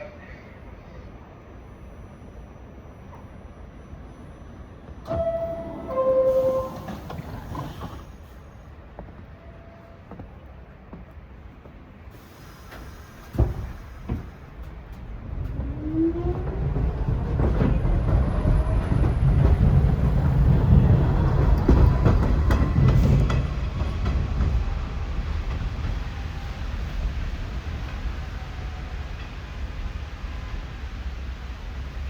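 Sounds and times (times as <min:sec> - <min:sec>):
train wheels clacking: 0:12.6 - 0:28.2.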